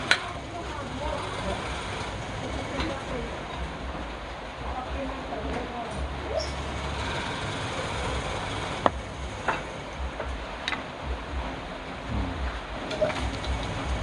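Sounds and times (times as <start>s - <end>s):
wood lathe running: 0.0s - 4.5s, 6.2s - 10.6s
low rhythmic pulsing: 0.0s - 14.0s.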